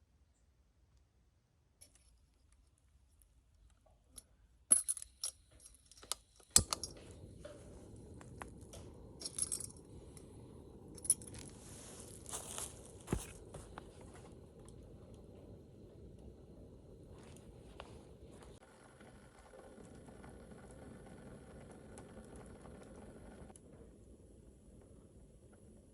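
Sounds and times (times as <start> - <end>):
metallic clinks and knocks of gear: 4.7 - 7.1
rustling: 7.0 - 15.4.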